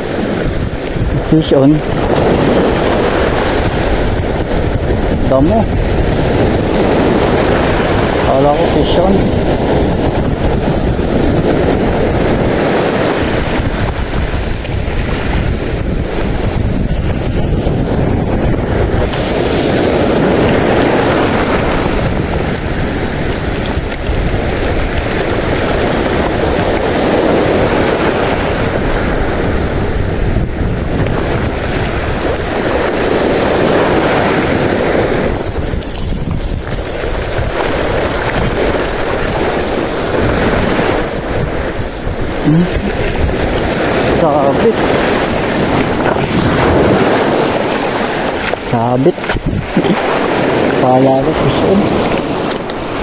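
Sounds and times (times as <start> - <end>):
strong wind buffeting microphone: 0.0 - 53.0.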